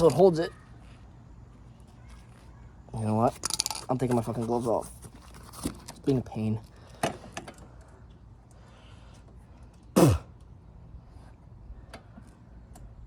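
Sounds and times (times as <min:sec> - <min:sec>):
man grunting: 0:10.0 - 0:10.2.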